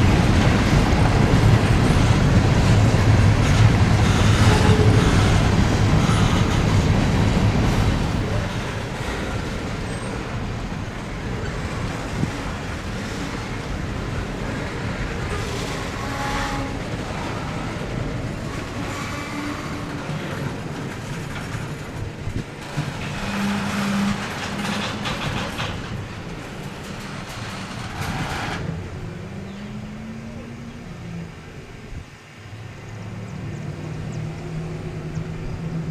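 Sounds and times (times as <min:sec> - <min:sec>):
wheel clatter: 0:00.0 - 0:30.4
freight train rumbling: 0:00.0 - 0:35.9.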